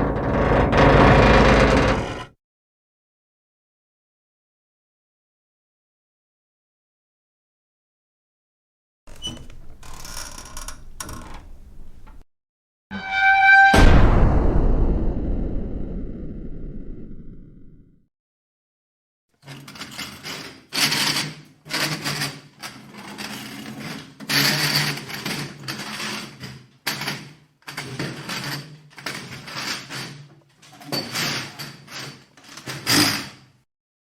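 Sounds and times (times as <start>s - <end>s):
metal creaking and grinding: 0.0s - 2.3s, 9.1s - 12.2s, 12.9s - 14.2s
sharp loud squeal: 12.9s - 17.4s.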